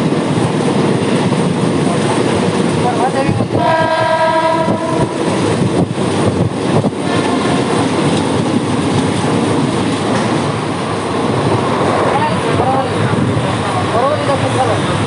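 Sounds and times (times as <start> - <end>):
electric train rumbling: 0.0 - 15.0
train horn: 3.5 - 5.3.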